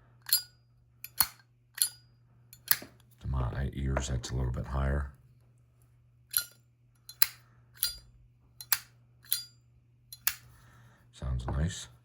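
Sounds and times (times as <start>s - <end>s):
lighter lid clicking: 8.6s - 9.5s, 10.2s - 10.5s.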